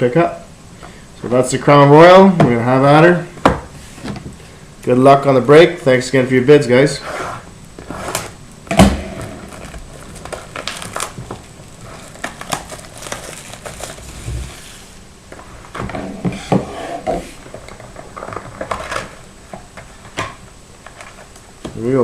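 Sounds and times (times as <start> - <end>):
wrapper crinkling: 9.2 - 14.6
cardboard handling: 9.2 - 14.9.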